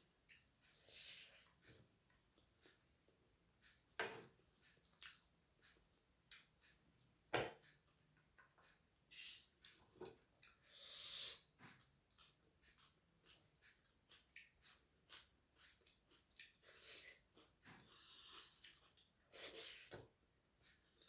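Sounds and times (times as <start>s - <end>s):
person chewing food: 0.0s - 21.0s
person breathing: 10.7s - 11.5s, 17.8s - 18.6s.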